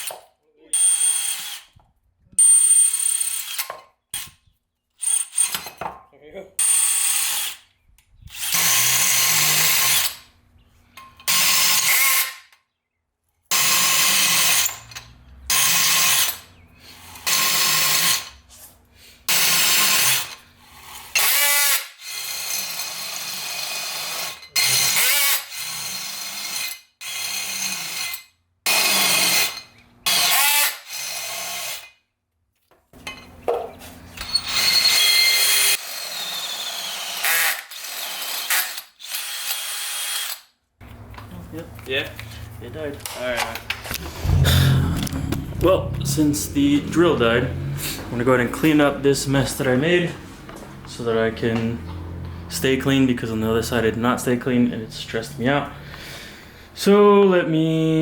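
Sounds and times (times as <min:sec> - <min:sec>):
power drill running: 0:34.2 - 0:40.4.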